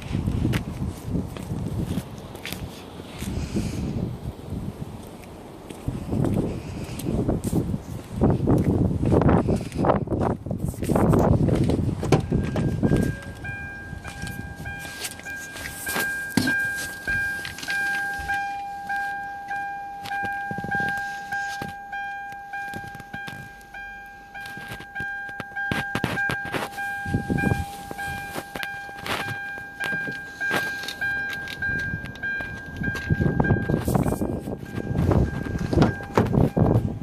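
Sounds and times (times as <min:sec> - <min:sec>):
pulsing electronic warning tone: 0:12.2 - 0:37.0.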